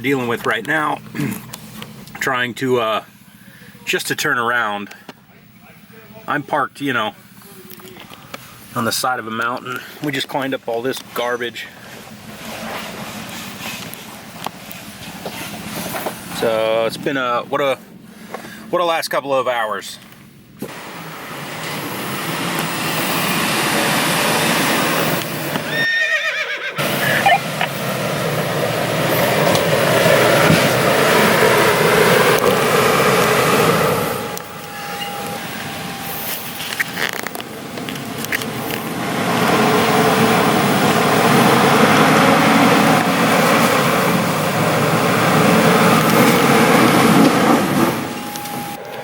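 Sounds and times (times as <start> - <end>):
truck engine revving: 20.6 - 49.0.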